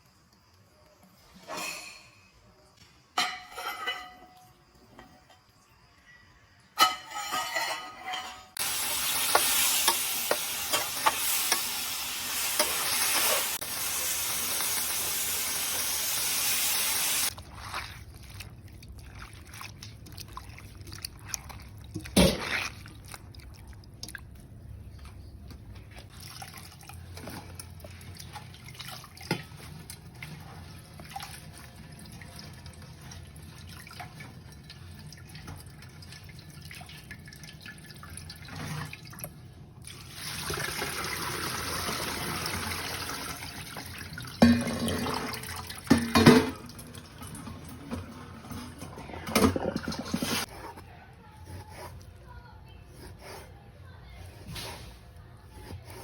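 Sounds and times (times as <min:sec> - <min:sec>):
tap water running into sink: 0:39.9 - 0:50.5
things knocking in sink: 0:44.4 - 0:46.8, 0:47.8 - 0:50.4.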